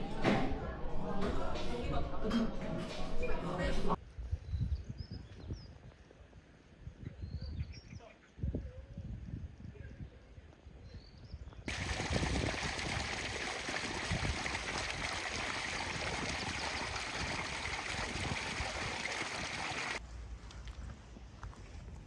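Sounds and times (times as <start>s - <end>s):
running water: 11.7s - 20.0s.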